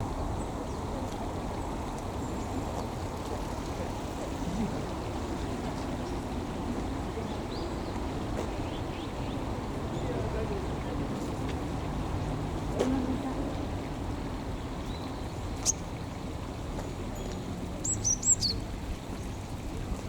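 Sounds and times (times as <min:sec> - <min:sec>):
stream babbling over stones: 0:00.0 - 0:20.0.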